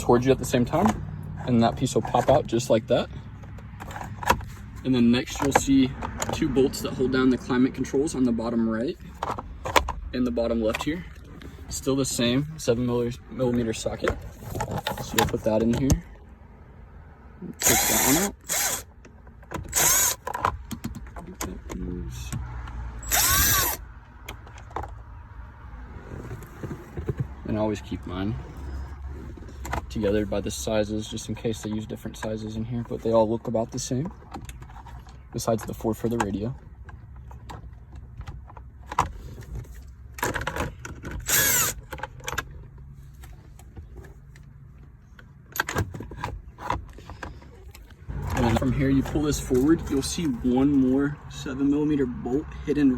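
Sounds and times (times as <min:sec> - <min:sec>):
tool and bolt rattling: 0:03.4 - 0:06.5, 0:13.4 - 0:16.2, 0:17.6 - 0:21.9, 0:33.4 - 0:44.5, 0:45.1 - 0:50.8
power drill spinning: 0:17.6 - 0:18.9, 0:19.7 - 0:20.2, 0:23.0 - 0:23.8, 0:41.2 - 0:41.8.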